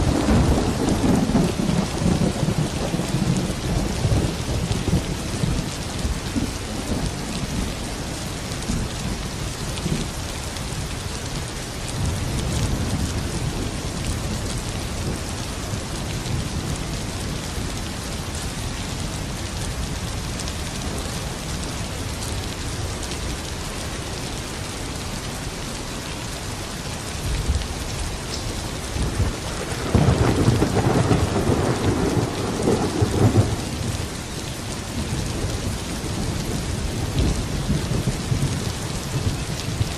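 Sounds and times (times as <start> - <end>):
thunder rumbling: 0.0 - 7.9, 28.7 - 39.9
steady rain falling: 0.0 - 39.9.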